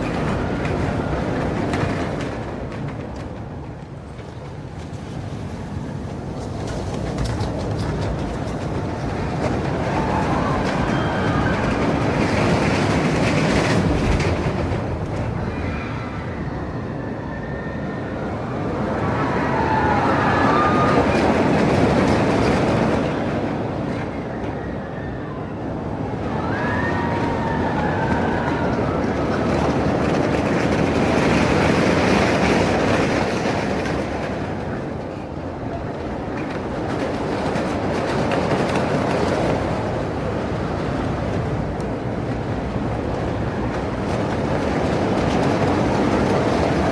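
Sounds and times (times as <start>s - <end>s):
roller coaster rumble on track: 0.0s - 46.9s
faint high squeals: 9.9s - 11.8s.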